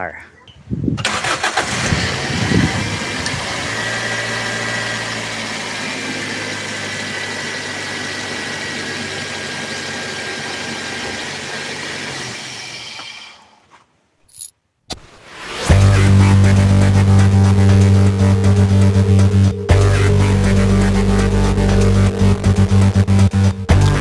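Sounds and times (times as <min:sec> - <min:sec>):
car engine idling: 0:01.2 - 0:12.2, 0:15.8 - 0:24.0.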